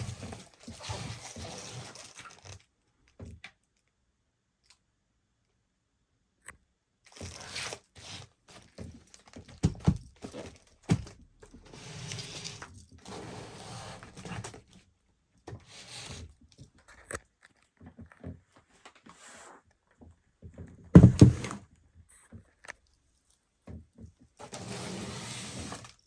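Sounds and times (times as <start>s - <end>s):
objects knocking and thumping down: 8.6s - 11.2s, 20.5s - 21.6s.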